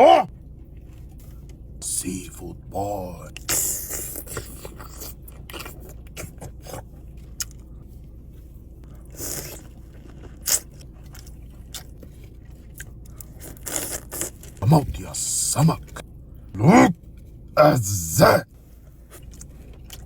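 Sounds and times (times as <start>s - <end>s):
wet chewing: 3.4s - 7.7s, 8.9s - 16.0s.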